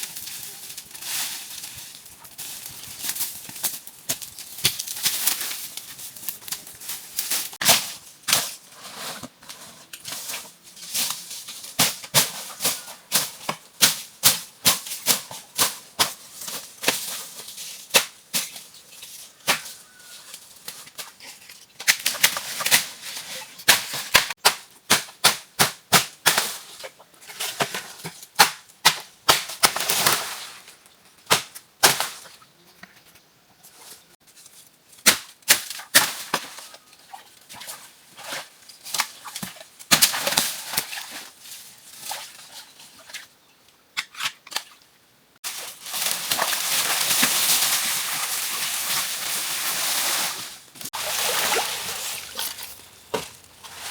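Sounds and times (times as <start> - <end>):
rustling and scraping: 0.0 - 13.6, 45.4 - 53.9.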